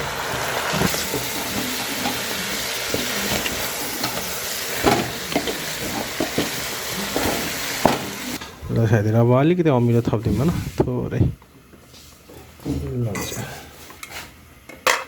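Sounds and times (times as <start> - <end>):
food sizzling in oil: 0.0 - 8.4
utensil knocking while stirring: 4.8 - 8.2.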